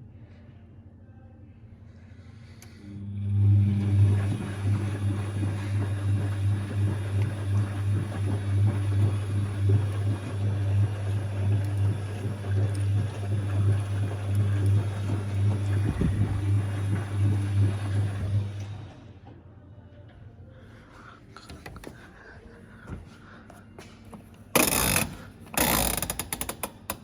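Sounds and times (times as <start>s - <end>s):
washing machine spinning: 2.9s - 19.5s, 24.1s - 27.0s.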